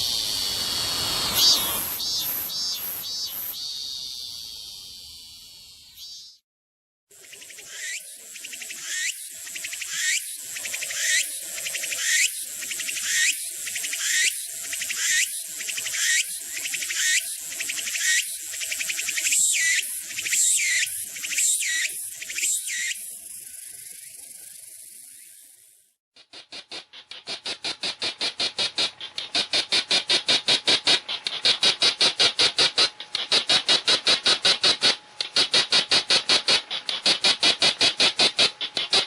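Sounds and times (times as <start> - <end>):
cicada buzzing song: 0.0 - 6.4, 7.1 - 25.7.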